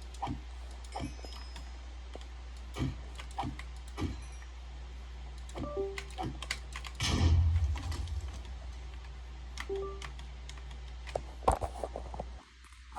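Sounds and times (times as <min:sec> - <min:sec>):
steady low hum: 0:00.0 - 0:12.9
laptop beep: 0:09.7 - 0:10.1.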